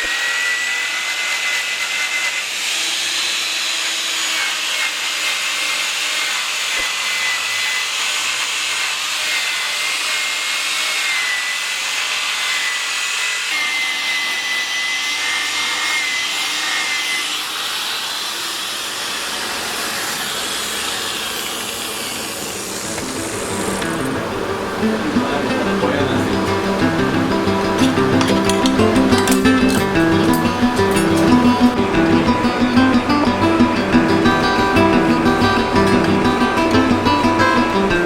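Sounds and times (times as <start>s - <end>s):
angle grinder rasping wood: 0.0s - 38.0s
high motor whine: 18.8s - 38.0s.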